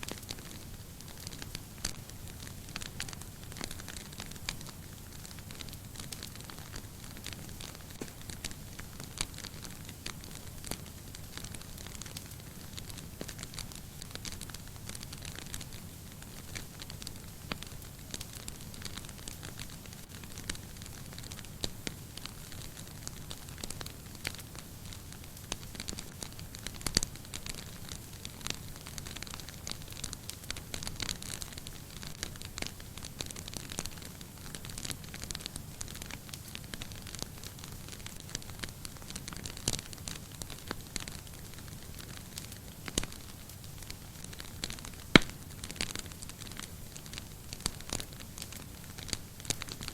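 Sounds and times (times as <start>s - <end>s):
fire crackling and popping: 0.0s - 49.9s
fire rumbling: 39.1s - 49.8s.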